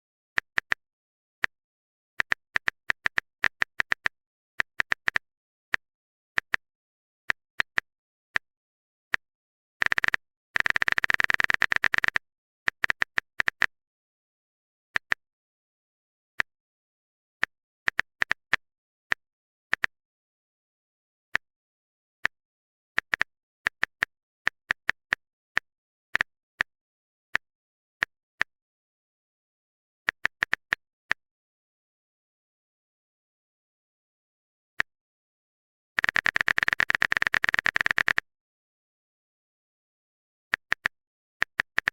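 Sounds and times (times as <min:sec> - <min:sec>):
typing clicks: 0:09.8 - 0:13.7, 0:36.0 - 0:38.2
short sharp clicks: 0:36.0 - 0:38.2.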